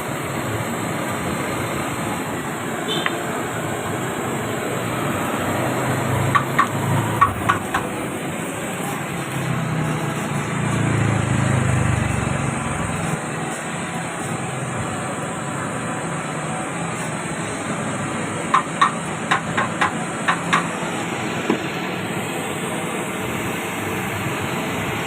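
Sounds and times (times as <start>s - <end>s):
vehicle engine humming: 0.0s - 25.0s
sharp clicks: 6.3s - 7.9s.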